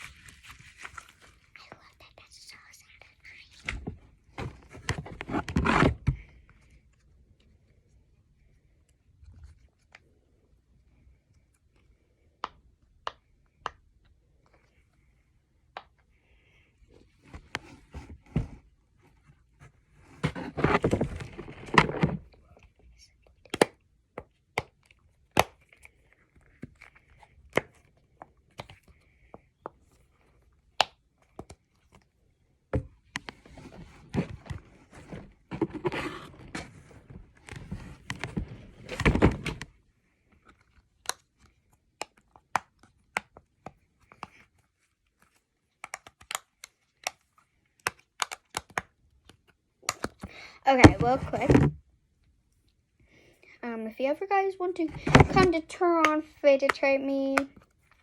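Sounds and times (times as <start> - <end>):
crinkly scraping handling noise: 0.0 - 1.6, 3.6 - 7.1, 17.2 - 22.4, 33.2 - 39.7.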